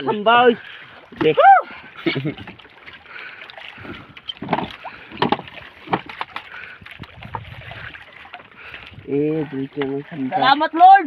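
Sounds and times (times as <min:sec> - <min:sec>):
water washing around boat hull: 0:00.0 - 0:11.0
sharp knocks and splashes: 0:00.6 - 0:11.0.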